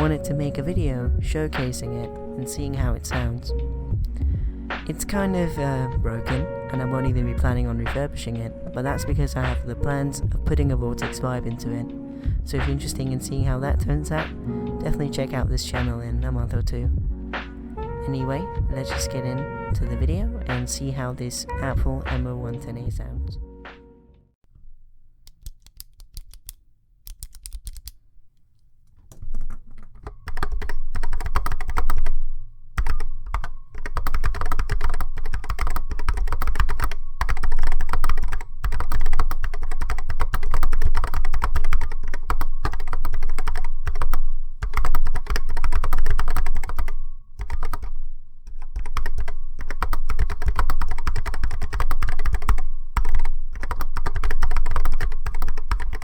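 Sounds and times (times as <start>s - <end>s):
keyboard typing: 25.3s - 28.0s, 28.9s - 32.2s, 32.8s - 56.0s.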